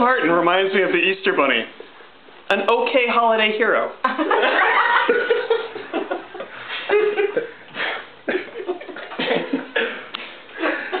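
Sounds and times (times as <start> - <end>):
people laughing: 4.0 - 11.0.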